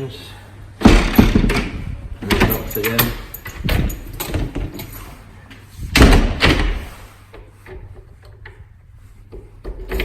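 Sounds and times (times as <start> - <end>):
door banging shut: 0.8 - 4.9, 5.9 - 6.9
handle and lock clicks: 1.4 - 5.0.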